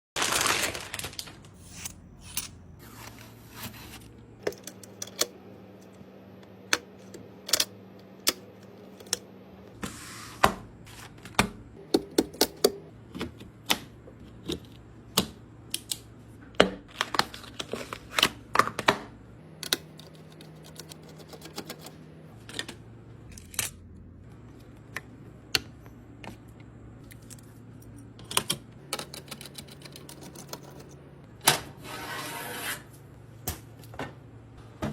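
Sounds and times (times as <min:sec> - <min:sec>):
computer parts clicking and tapping: 0:19.6 - 0:23.7, 0:27.1 - 0:31.0.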